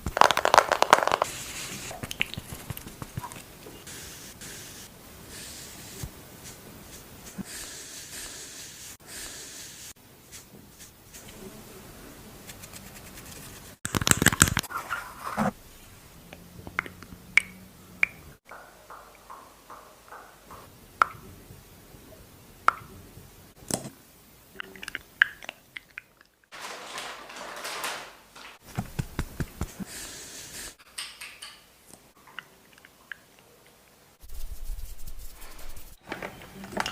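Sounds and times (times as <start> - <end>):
rustling: 26.5 - 29.9, 34.2 - 36.8.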